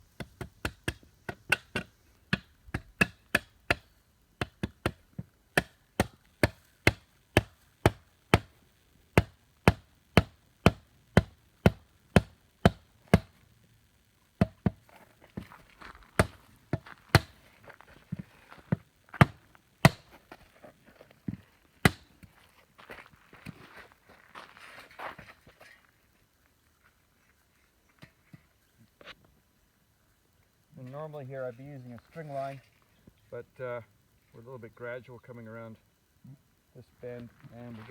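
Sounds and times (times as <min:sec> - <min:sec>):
faint rustling: 0:14.8 - 0:34.5.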